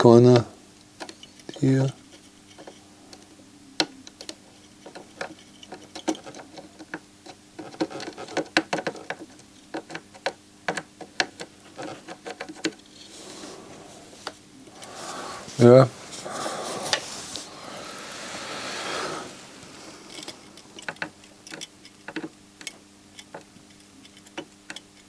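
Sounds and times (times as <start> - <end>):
faint steady hum: 9.2 - 25.0
soft hiss: 12.8 - 21.9.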